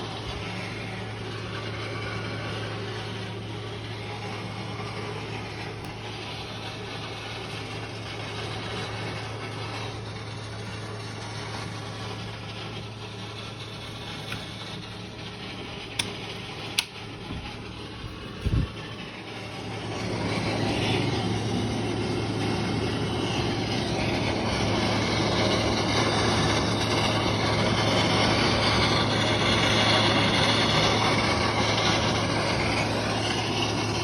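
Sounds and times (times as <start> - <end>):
low mechanical drone: 0.0 - 34.0
sharp clicks: 15.7 - 17.2.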